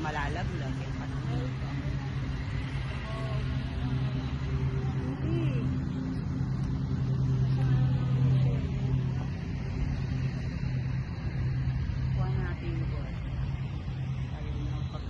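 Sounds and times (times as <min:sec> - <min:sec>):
engine hum: 0:00.0 - 0:15.0
faint voices: 0:00.0 - 0:15.0.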